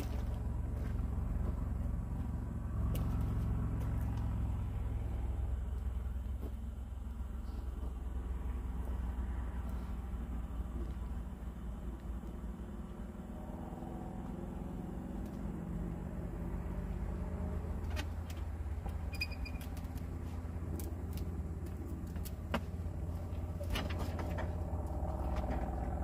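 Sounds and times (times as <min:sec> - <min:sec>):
log rolling across timbers: 0:17.4 - 0:26.0
timbers straining: 0:17.8 - 0:26.0.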